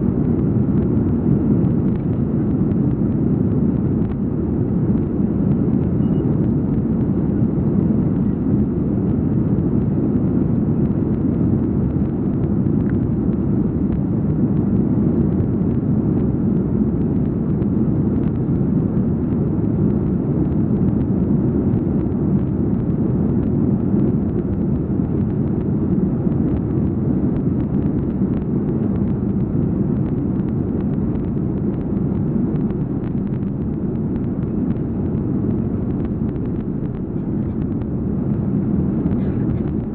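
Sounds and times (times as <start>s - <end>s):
aircraft cabin engine rumble: 0.0s - 39.9s.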